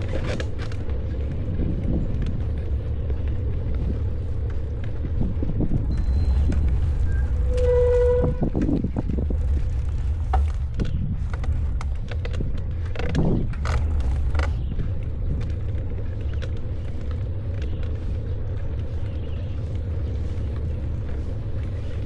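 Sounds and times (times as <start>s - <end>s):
clicks and rattles: 0.0s - 19.5s
bicycle riding rumble: 0.0s - 22.0s
short high squeal: 6.0s - 8.7s.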